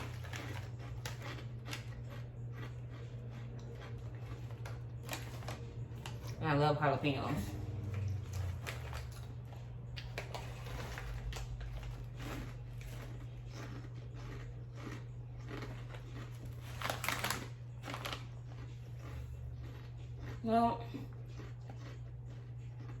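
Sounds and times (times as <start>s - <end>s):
person crunching snack chips: 0.0s - 6.5s, 7.6s - 23.0s
steady low hum: 0.0s - 23.0s.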